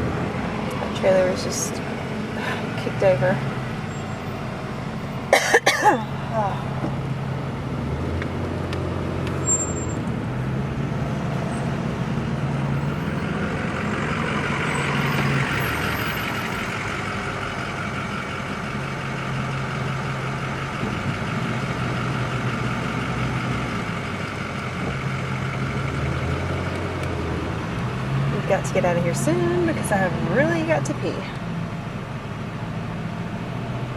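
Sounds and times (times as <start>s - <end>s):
car engine hum and road noise: 0.0s - 33.9s.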